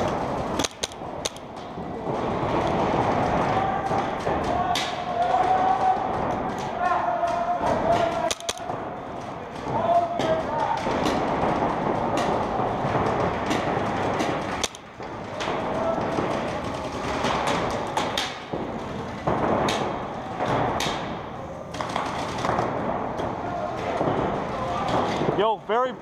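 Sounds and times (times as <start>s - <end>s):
paintball markers popping: 0.0s - 1.7s, 6.6s - 8.8s, 13.4s - 15.1s.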